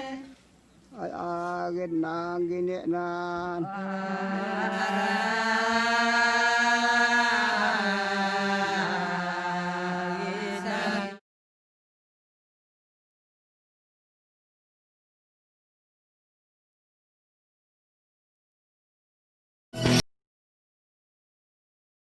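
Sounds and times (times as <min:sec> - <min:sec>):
voices chanting long notes: 0:00.9 - 0:11.2.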